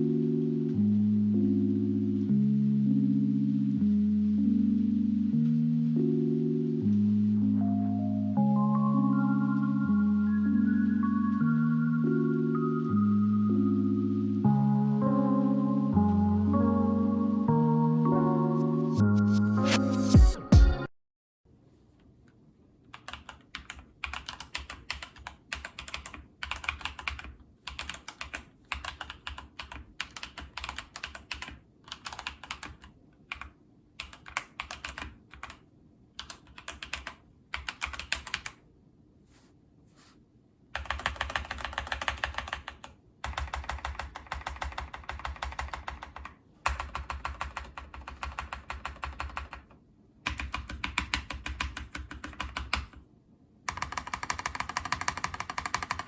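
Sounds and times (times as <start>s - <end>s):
mechanical keyboard typing: 22.9s - 38.6s, 40.8s - 53.1s, 53.7s - 56.0s.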